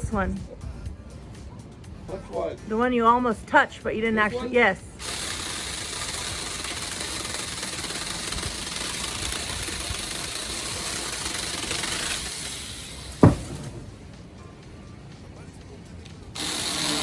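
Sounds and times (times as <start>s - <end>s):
chainsaw cutting branch: 5.0s - 14.0s, 16.4s - 17.0s.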